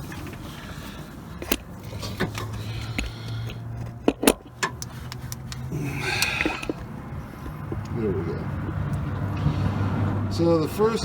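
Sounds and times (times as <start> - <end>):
camera handling clicks and knocks: 1.4 - 7.9.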